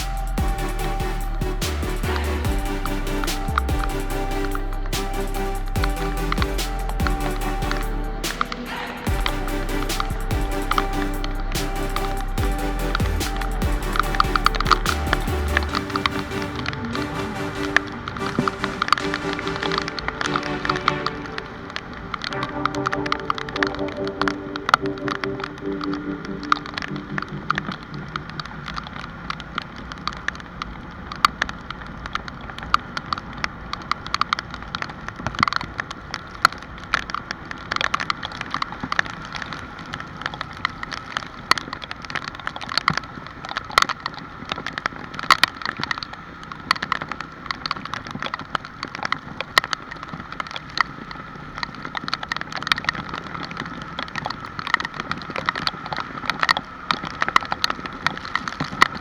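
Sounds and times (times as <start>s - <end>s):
rain drops tapping on hard surface: 22.2s - 59.0s.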